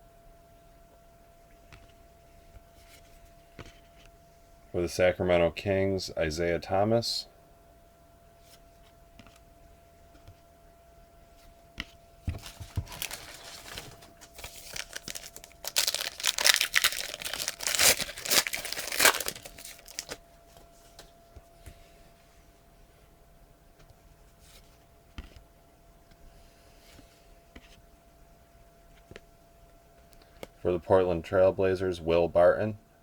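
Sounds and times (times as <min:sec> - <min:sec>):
wrapper tearing and crinkling: 0:12.4 - 0:20.2.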